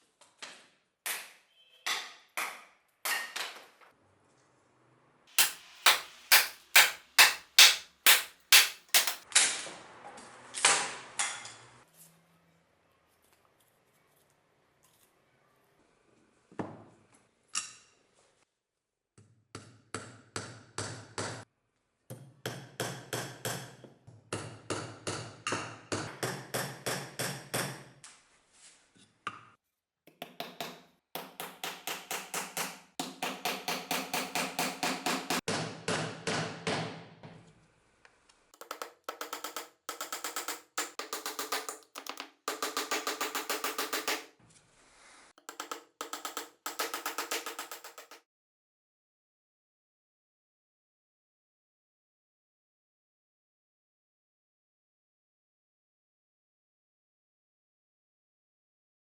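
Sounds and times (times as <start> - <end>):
axe chopping wood: 5.4 - 9.2.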